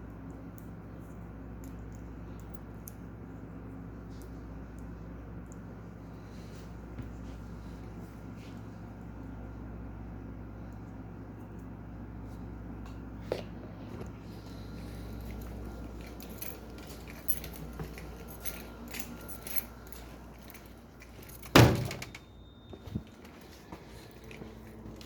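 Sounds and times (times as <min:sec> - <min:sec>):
handling clicks and rustles: 0:12.9 - 0:25.0.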